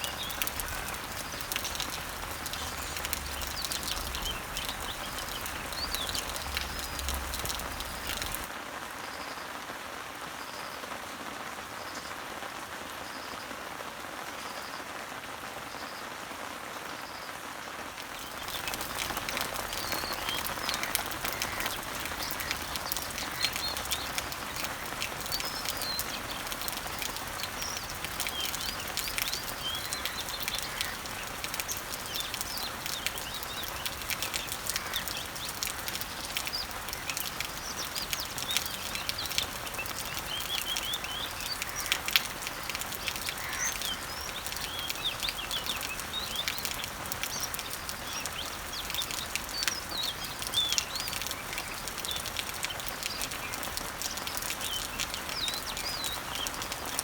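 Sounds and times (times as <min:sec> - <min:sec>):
birds chirping: 0:00.0 - 0:08.5, 0:18.0 - 0:57.0
rain pattering on leaves: 0:00.0 - 0:57.0.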